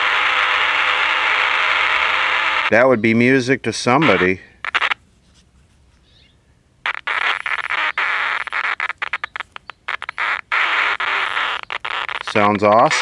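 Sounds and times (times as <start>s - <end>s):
radio static hissing and crackling: 0.0s - 2.8s, 3.7s - 5.0s, 6.8s - 13.0s.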